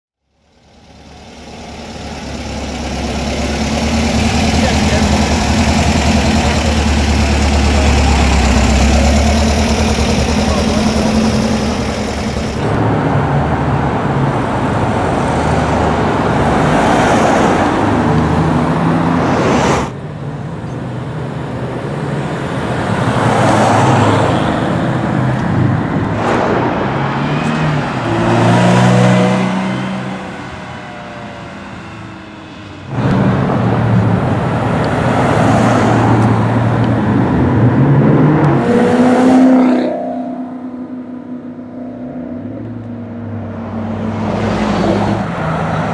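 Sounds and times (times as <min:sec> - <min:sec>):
sports cars accelerating past: 0:22.3 - 0:45.9.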